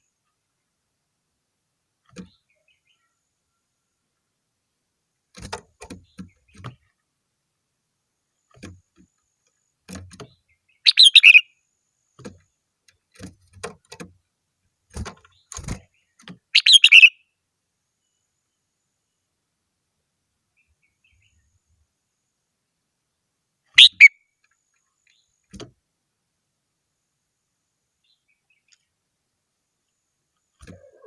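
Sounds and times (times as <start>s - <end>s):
bulbul singing: 10.1s - 11.5s, 15.2s - 17.3s, 23.8s - 24.3s.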